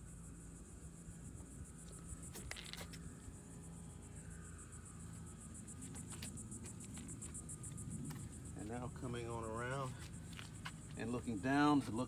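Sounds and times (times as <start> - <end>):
insects trilling: 0.0 - 12.0
low steady hum: 0.0 - 12.0.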